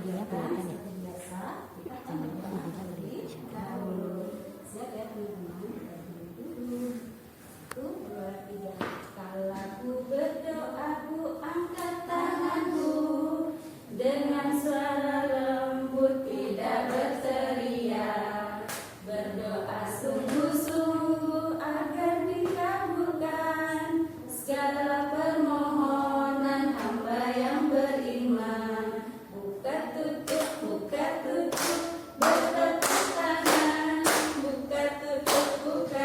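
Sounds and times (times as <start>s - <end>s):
group singing unaccompanied: 10.0s - 36.0s.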